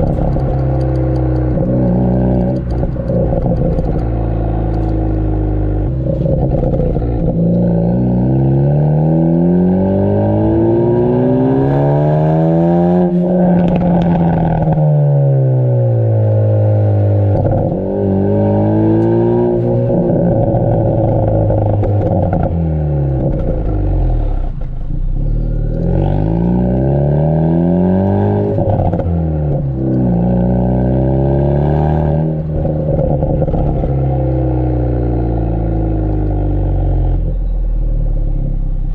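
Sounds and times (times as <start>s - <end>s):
exhaust pops and crackles: 0.0s - 7.8s, 13.1s - 15.0s, 17.3s - 17.9s, 19.0s - 26.0s, 28.4s - 30.3s, 32.1s - 36.4s
car engine revving: 0.0s - 38.9s.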